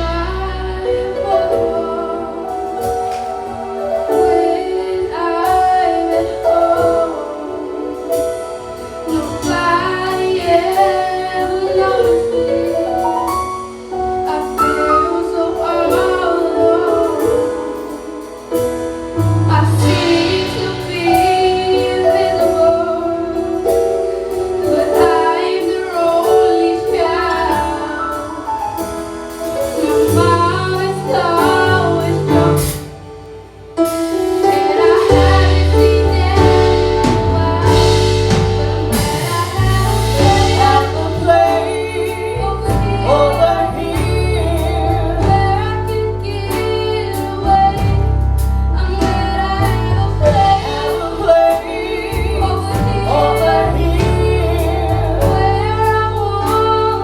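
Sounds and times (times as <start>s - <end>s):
heavy bass: 0.0s - 1.6s, 19.1s - 23.7s, 34.4s - 57.0s
instrumental accompaniment: 0.0s - 57.0s
woman singing gospel song: 0.0s - 57.0s.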